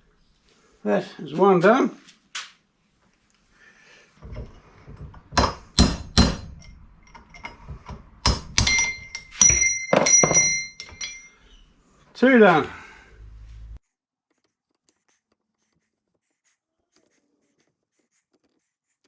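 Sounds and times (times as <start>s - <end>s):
hammer striking steel punch: 5.4s - 11.2s.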